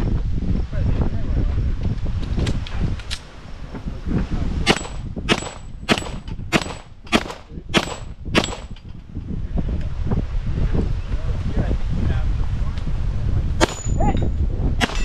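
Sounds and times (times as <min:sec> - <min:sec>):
pistol shots: 0:04.7 - 0:08.8, 0:13.6 - 0:14.0, 0:14.8 - 0:15.0
steel target ringing: 0:13.6 - 0:15.0.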